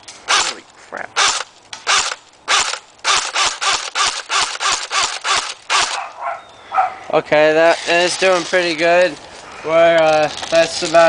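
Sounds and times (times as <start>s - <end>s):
airsoft gun firing: 1.2s - 6.0s.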